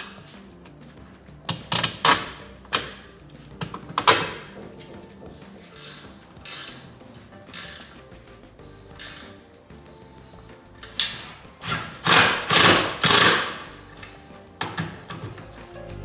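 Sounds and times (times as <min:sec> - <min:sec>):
power tool bursts: 0:11.7 - 0:13.7.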